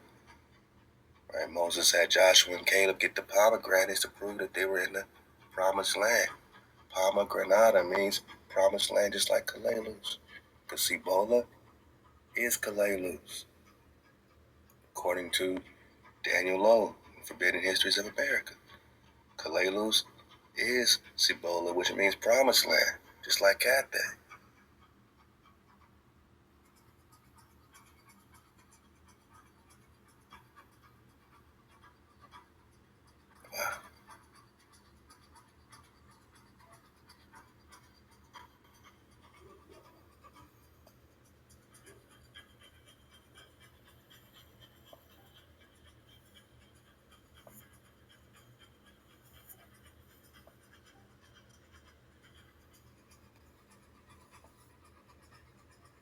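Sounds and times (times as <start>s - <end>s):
light scratching: 1.3s - 24.7s, 26.6s - 56.0s.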